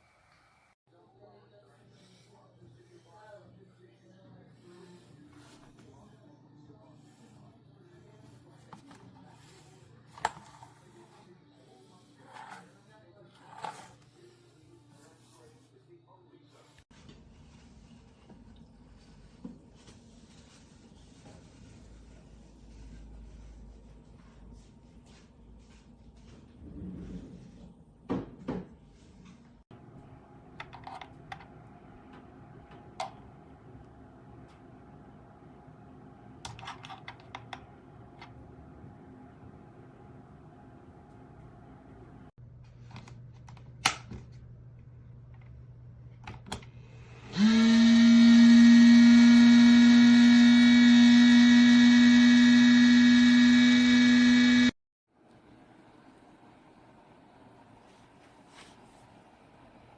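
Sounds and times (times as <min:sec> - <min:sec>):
small electric motor buzzing: 0:47.3 - 0:54.8
faint room noise: 0:55.1 - 0:59.9.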